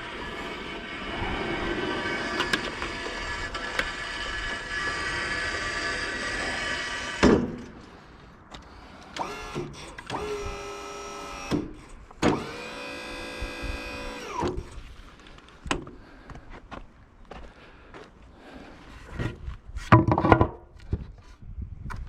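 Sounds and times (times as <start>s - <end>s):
sawmill running: 0.0s - 7.7s, 9.2s - 11.6s, 12.2s - 14.6s
small electric motor whirring: 9.2s - 15.2s.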